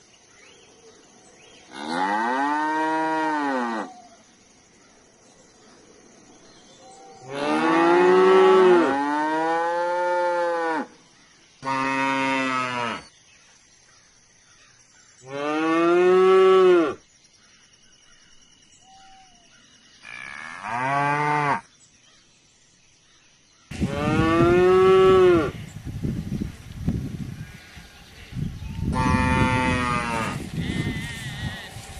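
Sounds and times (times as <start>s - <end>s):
cows mooing: 23.7s - 25.6s, 28.9s - 31.8s.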